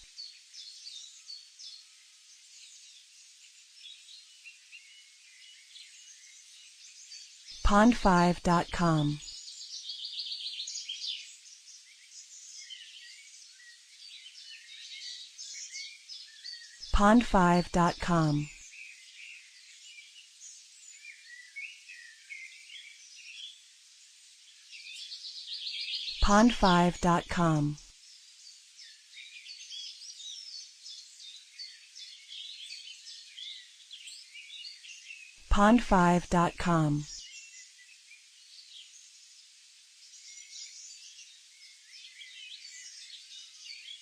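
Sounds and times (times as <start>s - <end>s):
faint background hiss: 0.0s - 44.0s
birds chirping and trilling: 9.2s - 16.9s, 24.6s - 27.0s, 28.4s - 35.4s, 40.0s - 44.0s.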